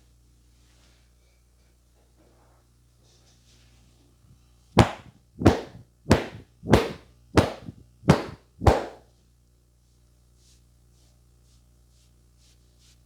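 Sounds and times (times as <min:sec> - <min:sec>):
sharp hand slaps: 0:04.8 - 0:09.0.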